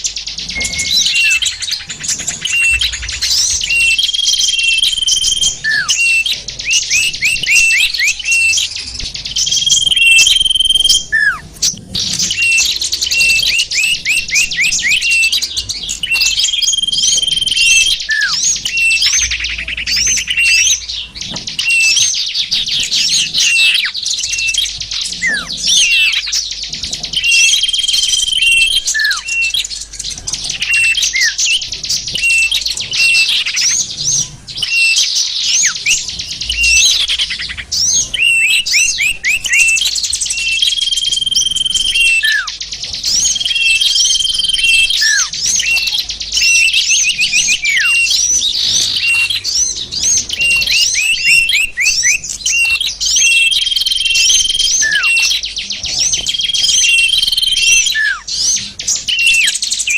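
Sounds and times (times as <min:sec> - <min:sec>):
small birds twittering: 0:00.0 - 0:59.9
held whistle: 0:00.4 - 0:08.7, 0:09.4 - 0:11.4, 0:16.0 - 0:20.8, 0:27.2 - 0:29.6, 0:34.6 - 0:42.6.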